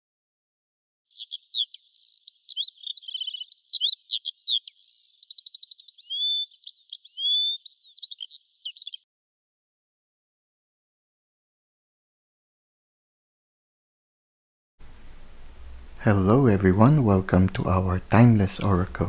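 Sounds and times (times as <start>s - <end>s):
songbirds chirping and trilling: 1.1s - 9.0s.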